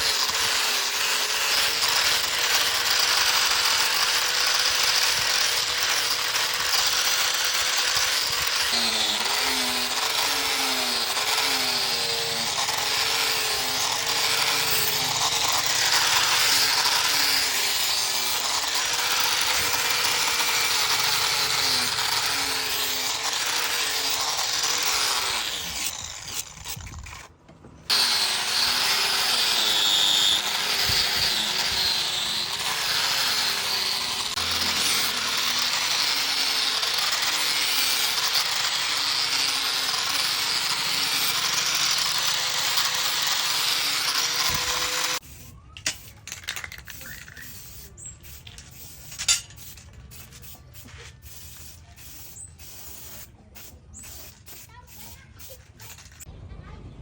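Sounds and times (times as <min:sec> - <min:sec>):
electric power tool motor: 0:00.0 - 0:27.3, 0:27.9 - 0:45.2.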